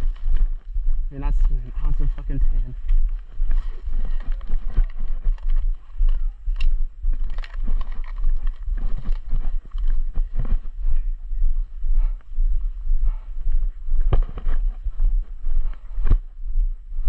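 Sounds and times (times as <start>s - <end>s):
footsteps: 0.0s - 16.8s
steady low rumble: 0.0s - 17.0s
gear jostling: 3.1s - 10.6s.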